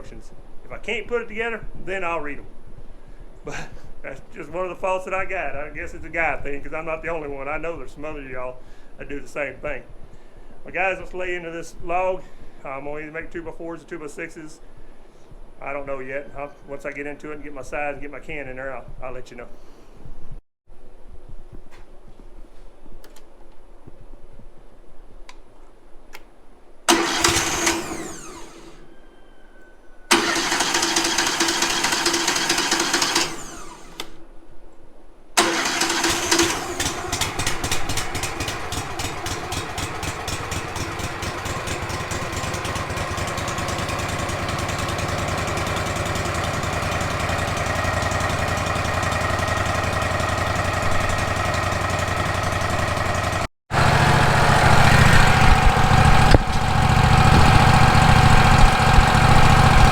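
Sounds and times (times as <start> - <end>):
sawmill engine starting and running: 26.9 - 29.3, 30.1 - 34.2, 35.4 - 59.9.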